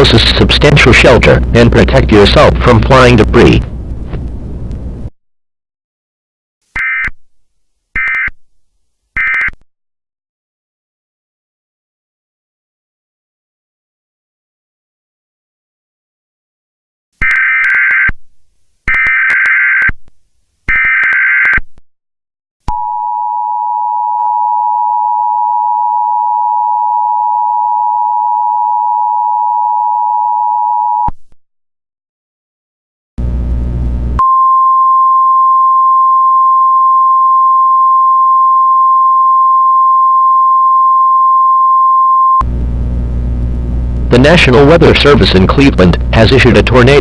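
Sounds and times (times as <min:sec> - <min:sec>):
steady single-pitch warning tone: 0:22.7 - 0:31.1, 0:34.2 - 0:43.4.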